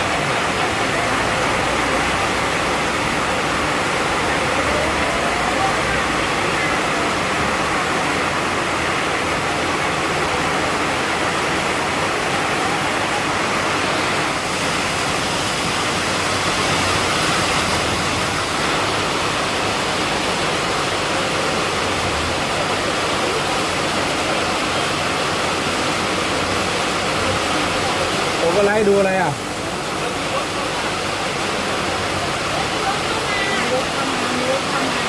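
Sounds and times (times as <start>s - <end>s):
heavy rain pouring: 0.0s - 35.0s.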